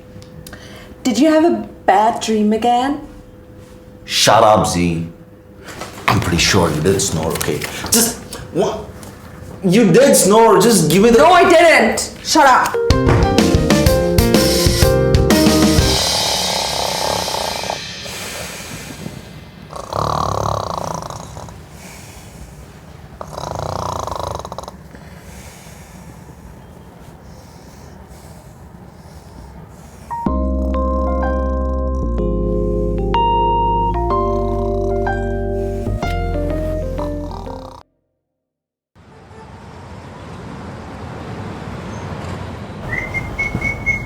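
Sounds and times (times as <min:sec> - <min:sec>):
person snoring: 0:14.3 - 0:19.0, 0:19.7 - 0:22.3, 0:23.2 - 0:24.8, 0:34.1 - 0:36.0, 0:36.8 - 0:37.8
traffic and street noise: 0:24.7 - 0:30.2, 0:39.0 - 0:44.0
whistling: 0:42.8 - 0:44.0.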